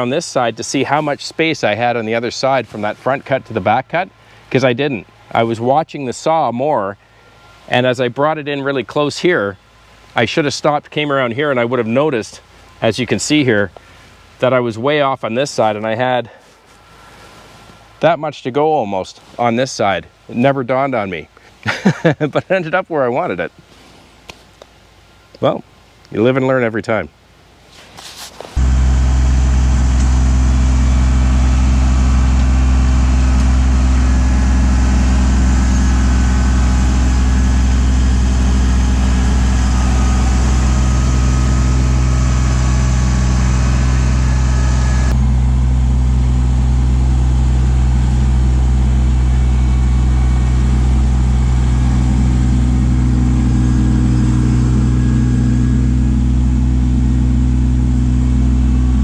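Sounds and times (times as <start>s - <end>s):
tractor diesel engine running: 0.0s - 14.6s, 28.6s - 59.0s.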